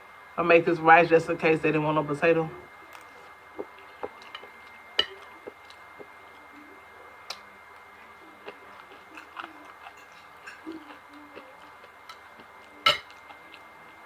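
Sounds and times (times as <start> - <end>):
close chewing and eating: 2.9 - 14.0.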